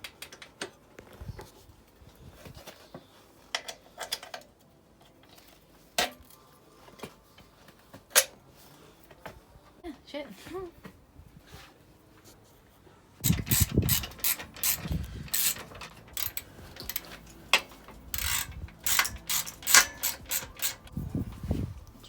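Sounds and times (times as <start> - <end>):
metal tools knocking: 13.2 - 20.9
ratchet wrench clicking: 13.2 - 20.9.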